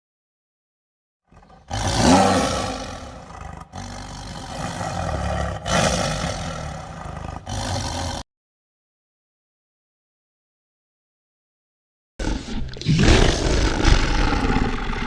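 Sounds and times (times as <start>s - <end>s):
large animal roaring: 1.3s - 8.2s, 12.2s - 15.0s.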